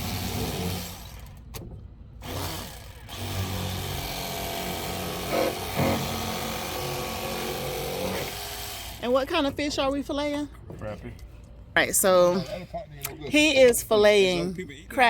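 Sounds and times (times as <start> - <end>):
electric knife buzzing: 2.2 - 9.0.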